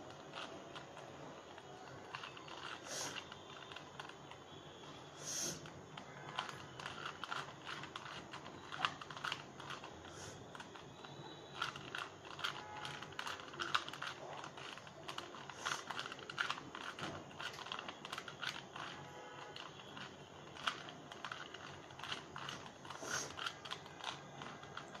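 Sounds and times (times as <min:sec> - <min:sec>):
puzzle cube plastic clicking: 0:00.0 - 0:25.0.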